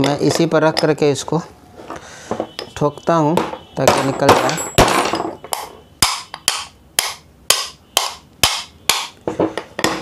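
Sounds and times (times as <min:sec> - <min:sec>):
hammer striking metal: 0:03.4 - 0:10.0.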